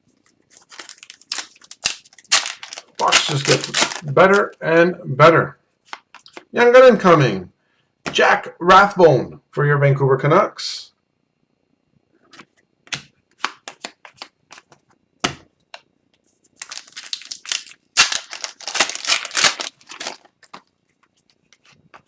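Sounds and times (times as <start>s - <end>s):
trading cards flipped through: 0.5s - 4.5s
wrapper crinkling: 0.5s - 4.5s, 16.6s - 21.4s.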